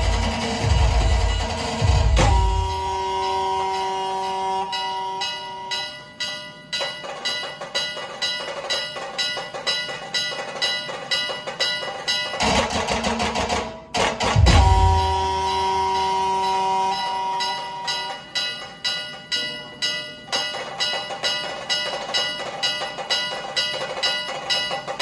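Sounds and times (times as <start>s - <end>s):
loud drums: 0.0s - 4.3s, 6.8s - 18.7s, 20.3s - 25.0s
horn long held note: 0.0s - 6.0s, 14.5s - 18.2s
bell struck rhythmically: 0.0s - 25.0s.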